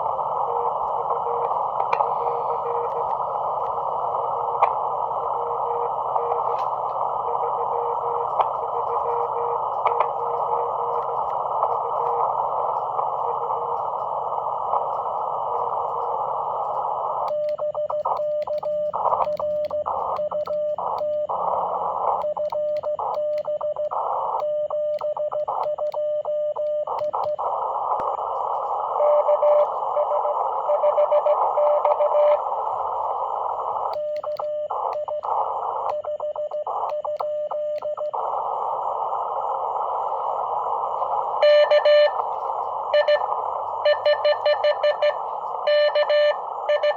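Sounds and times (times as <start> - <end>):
radio band hiss: 0.0 - 46.9
weak morse signal: 0.0 - 46.9
morse code tone: 41.4 - 42.2, 42.9 - 46.9.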